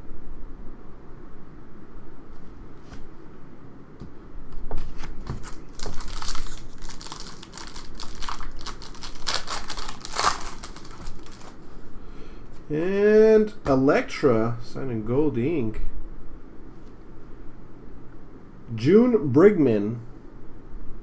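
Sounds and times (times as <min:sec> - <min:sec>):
plastic crinkling and rustling: 0:04.8 - 0:11.7.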